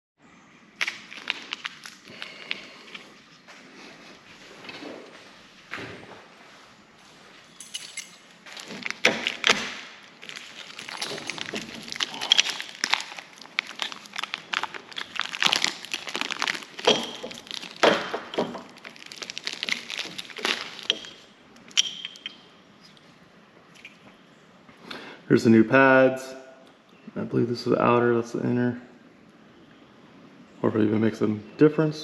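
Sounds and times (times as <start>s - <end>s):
plastic wrapping crinkling: 0.8s - 5.1s, 7.7s - 22.4s.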